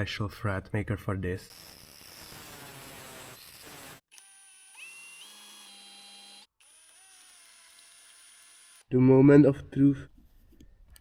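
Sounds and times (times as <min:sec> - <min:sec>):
power tool grinding: 0:01.5 - 0:08.9.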